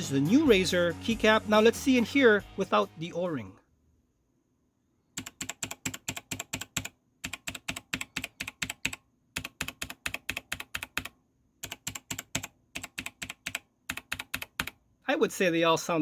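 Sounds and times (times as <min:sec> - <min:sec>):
mechanical keyboard typing: 0:05.2 - 0:14.8.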